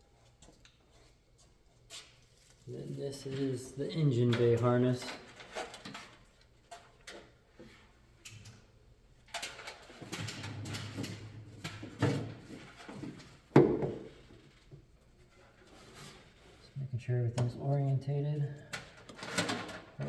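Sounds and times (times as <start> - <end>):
wiring harness clicking and rustling: 18.7 - 20.0.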